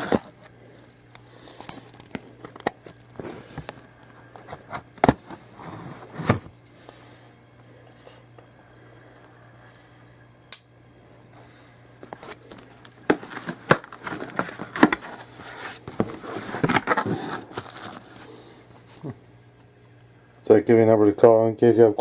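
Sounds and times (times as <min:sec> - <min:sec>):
packaging crinkling and rustling: 0:00.0 - 0:06.5, 0:12.0 - 0:19.1.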